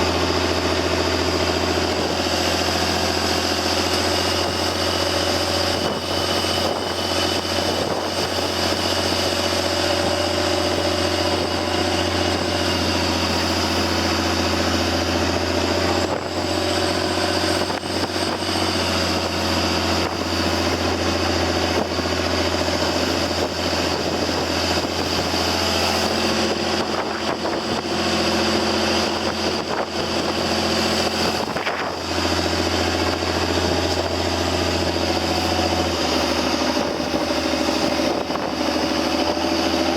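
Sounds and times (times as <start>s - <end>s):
boat engine humming: 0.0s - 39.9s
water noise: 0.0s - 39.9s
wind noise: 0.0s - 39.9s.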